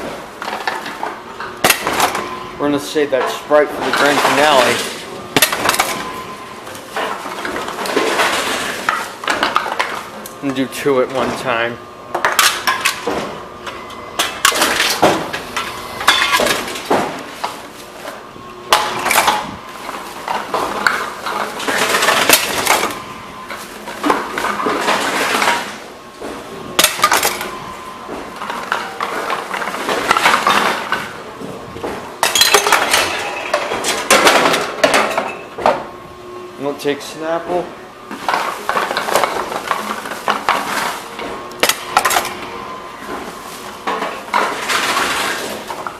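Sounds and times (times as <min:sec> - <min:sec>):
vending machine handling noise: 0:00.0 - 0:35.9, 0:37.2 - 0:45.9
bottles and cans clinking: 0:16.1 - 0:17.2, 0:32.2 - 0:35.5.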